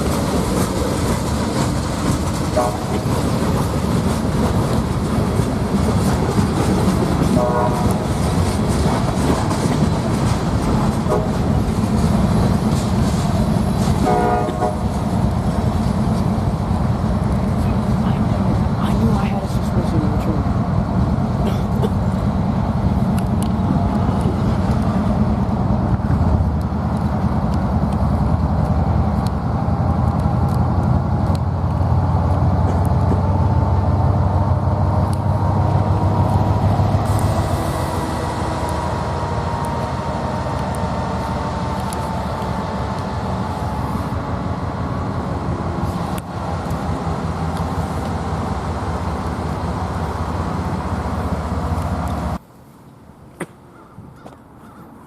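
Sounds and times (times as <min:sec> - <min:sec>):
diesel train rumbling past: 0:00.0 - 0:53.8.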